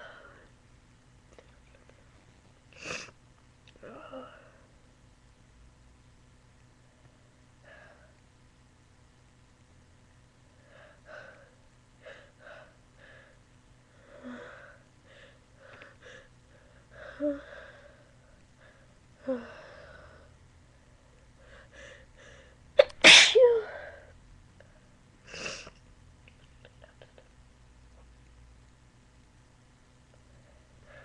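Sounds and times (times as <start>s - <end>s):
loud sneeze: 22.8s - 23.6s.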